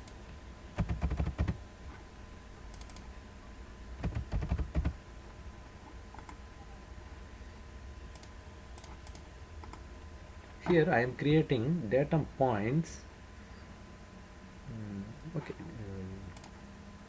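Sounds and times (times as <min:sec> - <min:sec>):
computer keyboard typing: 0:00.8 - 0:01.6, 0:02.7 - 0:03.0, 0:04.0 - 0:05.0
faint clicks: 0:02.7 - 0:03.0, 0:08.1 - 0:09.8, 0:16.3 - 0:16.6.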